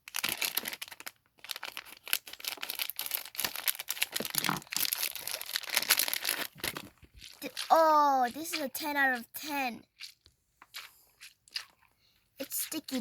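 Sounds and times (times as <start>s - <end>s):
plastic wrapping crinkling and tearing: 0.0s - 7.7s.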